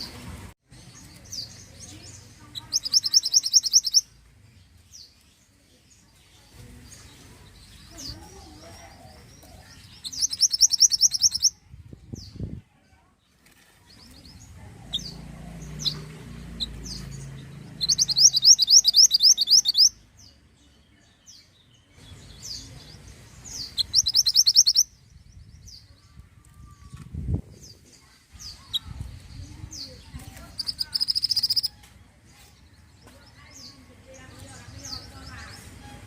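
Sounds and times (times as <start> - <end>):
short bird chirps: 2.6 - 4.0, 17.8 - 20.0, 23.5 - 24.9, 30.6 - 31.8.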